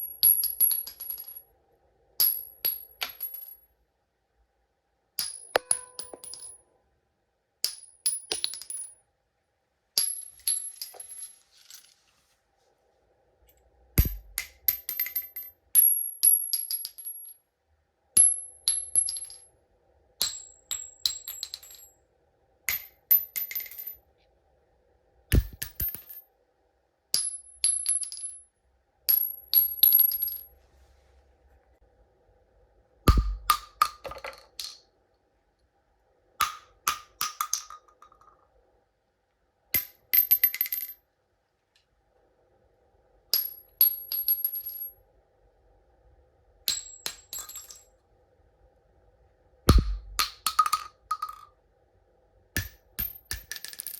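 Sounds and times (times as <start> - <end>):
cartridges clattering on hard floor: 0.0 - 1.4, 2.2 - 3.7, 5.2 - 6.6, 7.6 - 9.0, 10.0 - 11.9, 14.0 - 17.4, 18.2 - 19.5, 20.2 - 22.0, 22.7 - 24.0, 27.2 - 28.4, 29.1 - 30.5, 33.1 - 34.8, 36.4 - 38.4, 39.8 - 41.0, 43.4 - 45.0, 46.7 - 47.9, 49.7 - 51.5, 52.6 - 53.9
heavier thud: 49.7 - 50.2.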